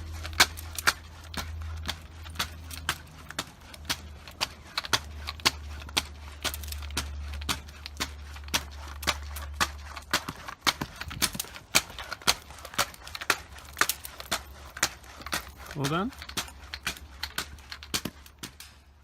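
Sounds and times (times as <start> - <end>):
pogo stick bouncing clicks: 0.0 - 19.0.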